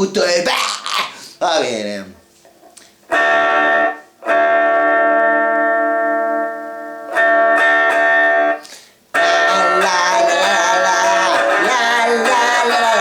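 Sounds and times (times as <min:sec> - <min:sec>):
electric guitar chords strummed: 0:03.1 - 0:13.0.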